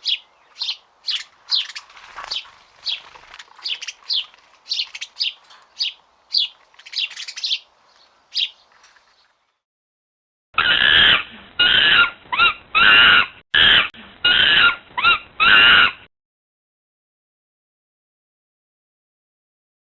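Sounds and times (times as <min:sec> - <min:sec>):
loud harsh bird squawks: 0:00.0 - 0:07.6, 0:10.6 - 0:16.1
songbird chirping: 0:00.0 - 0:09.6.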